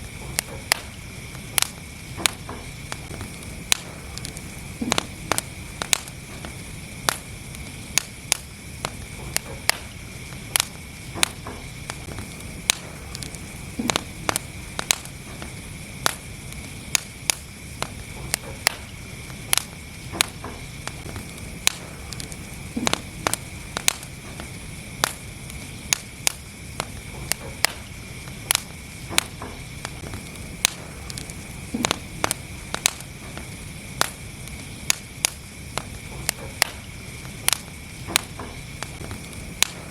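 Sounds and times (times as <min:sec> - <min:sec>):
fire crackles and pops: 0:00.0 - 0:39.9
wood fire rumble and hiss: 0:00.0 - 0:39.9.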